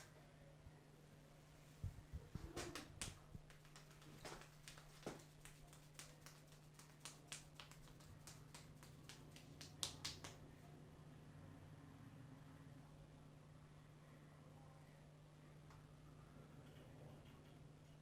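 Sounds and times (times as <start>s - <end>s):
fingers tapping on head: 2.2s - 10.4s.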